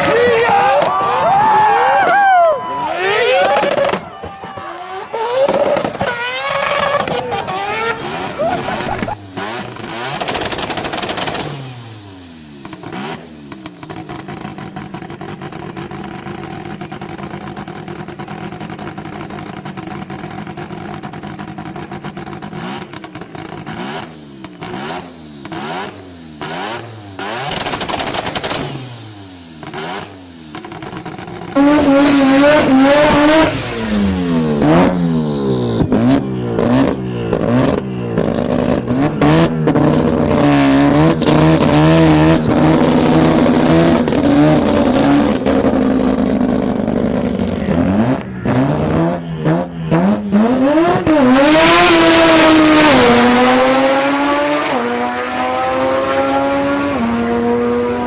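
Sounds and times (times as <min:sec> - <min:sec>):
rotary engine revving: 0:04.8 - 0:58.0.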